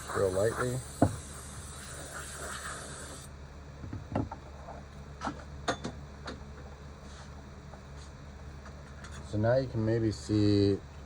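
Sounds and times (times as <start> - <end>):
compressed air hissing: 0.0 - 3.3.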